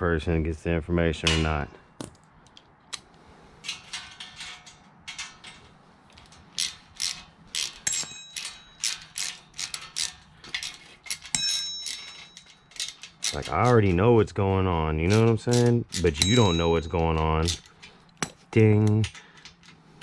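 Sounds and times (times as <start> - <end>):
metallic ring: 3.8 - 13.9, 15.9 - 18.5
ratchet wrench clicking: 6.2 - 13.9, 15.1 - 18.2.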